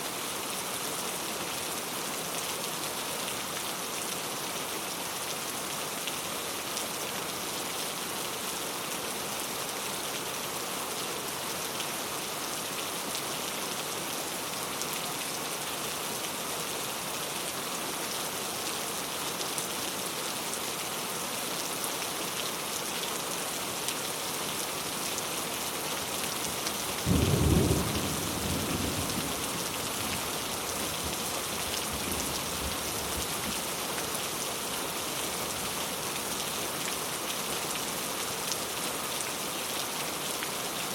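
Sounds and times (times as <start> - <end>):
steady rain: 0.0 - 40.9
low rumble of thunder: 27.1 - 30.0.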